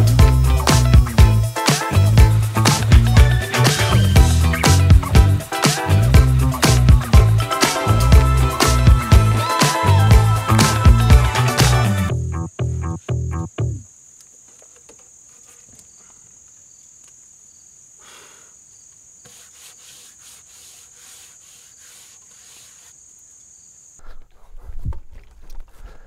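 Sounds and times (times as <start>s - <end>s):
insects trilling: 12.1s - 24.1s.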